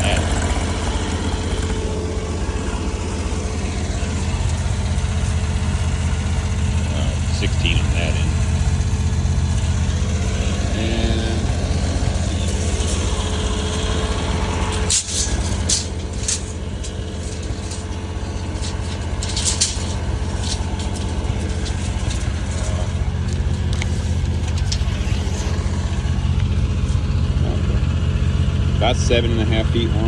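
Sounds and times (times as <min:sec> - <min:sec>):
small diesel engine running: 0:00.0 - 0:30.0
metallic clinks and rattles: 0:11.6 - 0:26.0.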